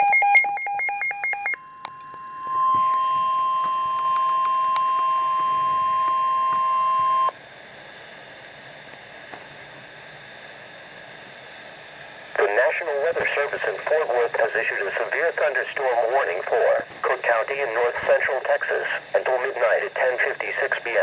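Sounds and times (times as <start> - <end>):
steady warning tone: 0.0 - 7.4
radio static hiss: 8.7 - 21.0.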